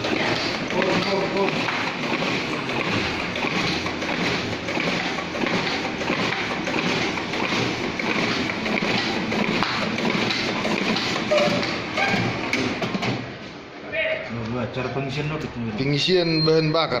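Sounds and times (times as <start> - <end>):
duplicator rhythmic clatter: 0.0 - 13.4.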